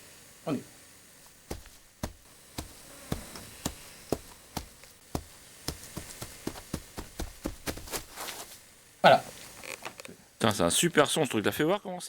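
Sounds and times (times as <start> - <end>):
footsteps walking: 1.2 - 8.7.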